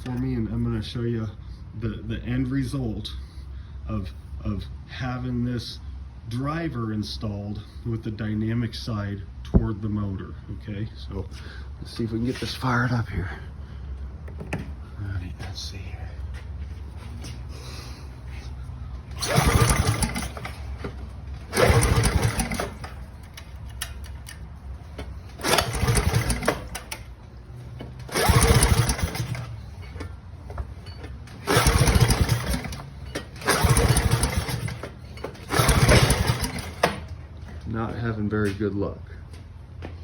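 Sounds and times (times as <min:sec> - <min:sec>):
recoil starter pulled: 0:19.0 - 0:37.2
small engine turning over: 0:19.1 - 0:24.4, 0:25.2 - 0:27.1, 0:27.9 - 0:30.1, 0:30.8 - 0:37.1.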